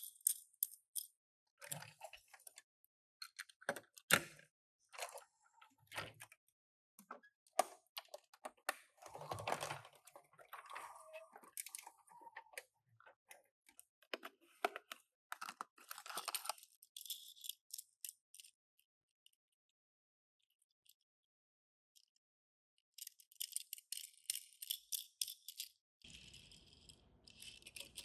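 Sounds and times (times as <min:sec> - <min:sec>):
toy cars clicking and tapping: 0:16.1 - 0:18.6, 0:23.0 - 0:28.0.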